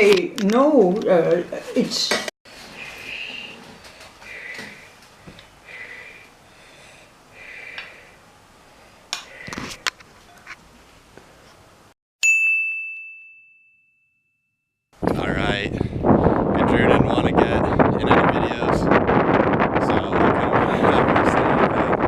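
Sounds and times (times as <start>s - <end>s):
bright bell-like ding: 12.2s - 14.4s.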